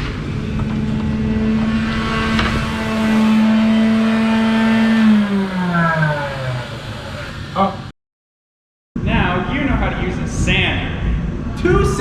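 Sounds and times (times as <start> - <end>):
power tool motor winding down: 0.1 - 7.9.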